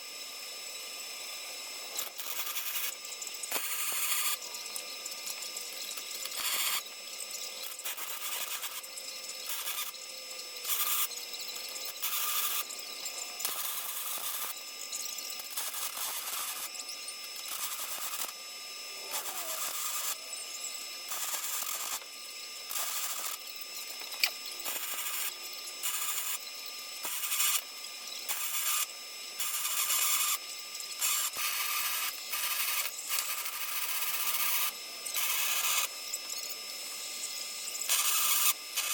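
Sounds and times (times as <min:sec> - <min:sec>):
welder crackling hiss: 0:01.9 - 0:04.4, 0:07.6 - 0:08.8, 0:09.4 - 0:10.0, 0:12.0 - 0:14.6, 0:17.4 - 0:20.3, 0:21.0 - 0:22.1, 0:22.7 - 0:26.4, 0:27.0 - 0:30.4, 0:31.0 - 0:36.0, 0:36.8 - 0:38.9.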